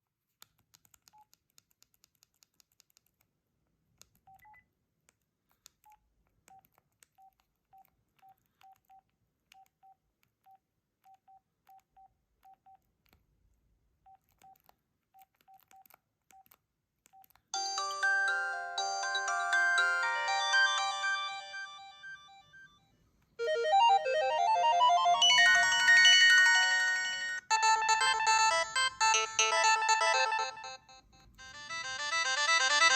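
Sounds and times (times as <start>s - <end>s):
phone keypad beeps: 4.3s - 4.7s
phone ringtone melody: 17.6s - 32.9s.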